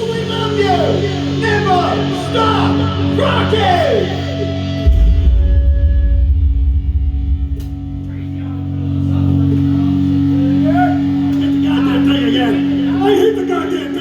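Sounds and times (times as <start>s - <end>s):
low bass notes: 0.0s - 14.0s
electric guitar bending lines: 4.2s - 13.0s
heavy low-end hit: 4.8s - 10.4s.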